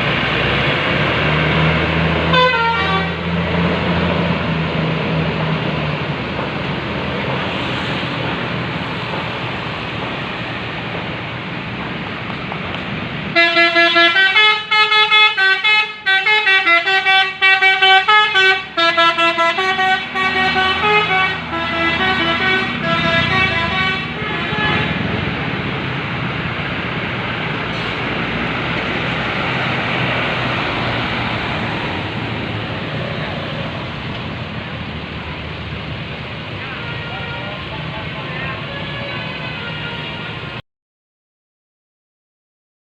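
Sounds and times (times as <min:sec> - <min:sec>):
traffic noise: 0:00.0 - 0:40.6
bus air horn playing a tune: 0:02.2 - 0:03.3, 0:13.3 - 0:25.0, 0:36.6 - 0:37.7, 0:38.6 - 0:40.6.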